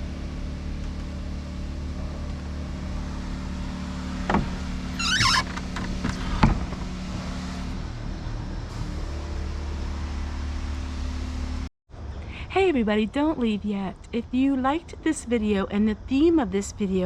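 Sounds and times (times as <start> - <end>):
low motor hum: 0.0 - 12.2
wavering high squeak: 4.9 - 5.5.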